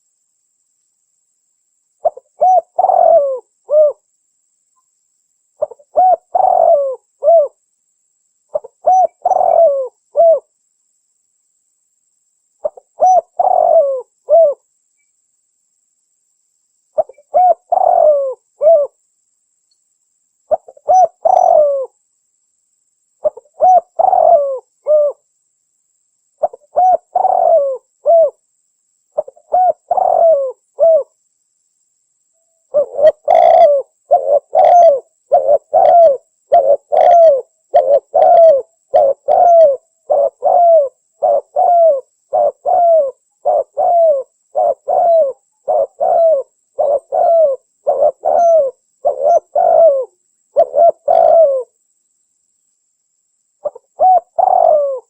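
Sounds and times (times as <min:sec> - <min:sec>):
dove cooing: 0:02.0 - 0:04.0, 0:05.6 - 0:07.6, 0:08.5 - 0:10.5, 0:12.6 - 0:14.6, 0:17.0 - 0:19.0, 0:20.5 - 0:22.0, 0:23.2 - 0:25.2, 0:26.4 - 0:28.4, 0:29.2 - 0:31.1, 0:32.7 - 0:51.8, 0:53.6 - 0:55.0.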